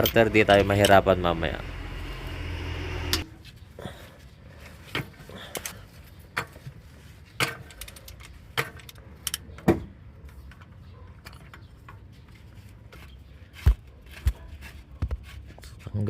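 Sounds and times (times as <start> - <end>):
hand tools clinking on metal: 0.0 - 1.2.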